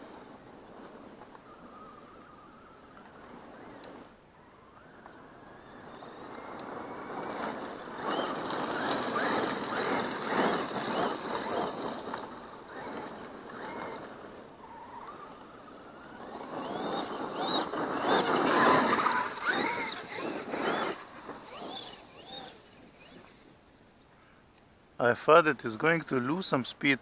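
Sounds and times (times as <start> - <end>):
electric motor whining: 1.4 - 23.5
tyres rushing on ground: 4.8 - 23.4.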